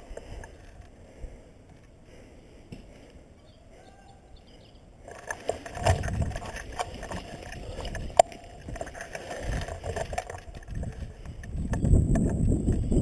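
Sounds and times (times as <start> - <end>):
rustling: 5.0 - 11.6.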